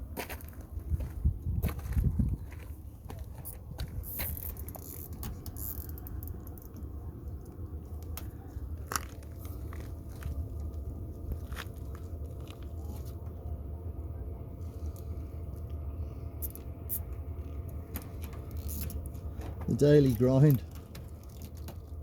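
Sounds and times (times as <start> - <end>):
steady low rumble: 0.0 - 22.0
hands clicking and scraping fittings: 4.0 - 8.3.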